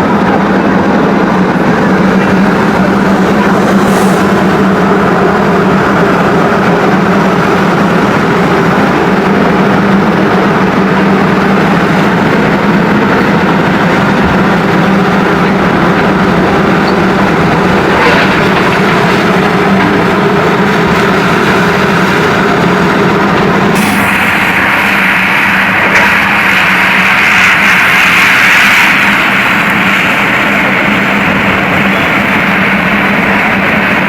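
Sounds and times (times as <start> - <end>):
heavy engine running: 0.0 - 34.0.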